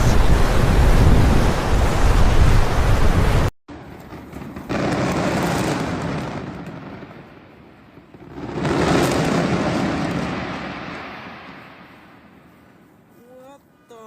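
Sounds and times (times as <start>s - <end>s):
wind buffeting microphone: 0.0s - 3.5s.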